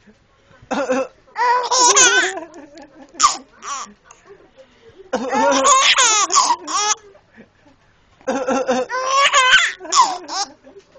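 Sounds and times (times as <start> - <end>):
baby laughing: 1.4 - 3.9, 5.2 - 7.0, 8.3 - 10.6.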